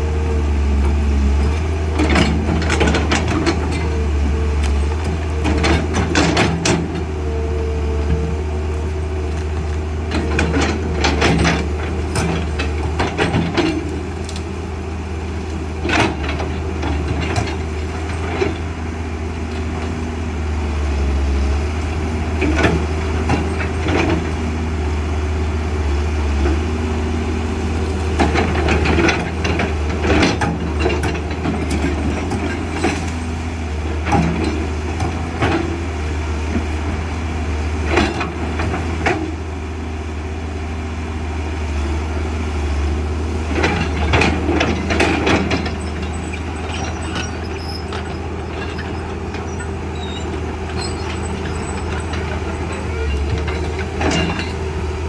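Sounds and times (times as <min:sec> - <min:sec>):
diesel engine running: 0:00.0 - 0:55.0
machine clanks and knocks: 0:01.9 - 0:07.1, 0:10.1 - 0:14.5, 0:15.6 - 0:18.8, 0:28.1 - 0:33.2, 0:43.5 - 0:55.0.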